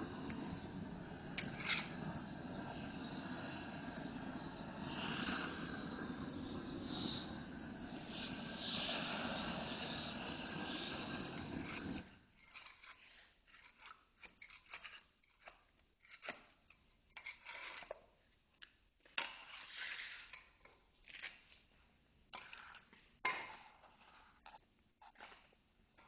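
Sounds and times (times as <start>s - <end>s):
torch flame hissing: 0.0s - 12.1s.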